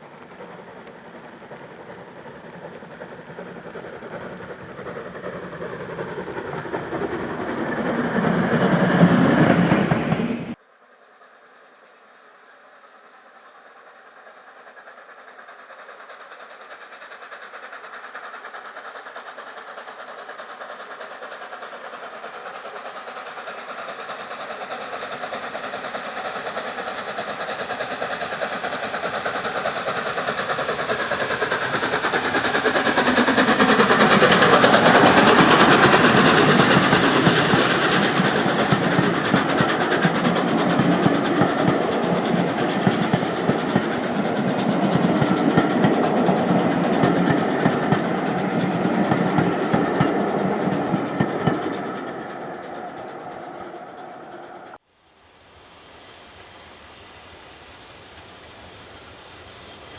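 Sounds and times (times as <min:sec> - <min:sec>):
steam locomotive hauling train: 0:00.0 - 0:59.9.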